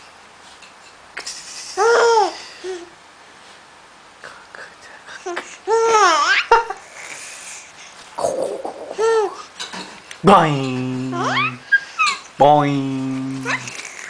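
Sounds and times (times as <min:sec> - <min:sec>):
baby babbling and laughing: 0:01.8 - 0:03.0, 0:05.2 - 0:06.6, 0:08.3 - 0:09.5, 0:10.9 - 0:12.3, 0:13.2 - 0:14.0
baby high squeals: 0:11.1 - 0:12.2, 0:13.4 - 0:13.8.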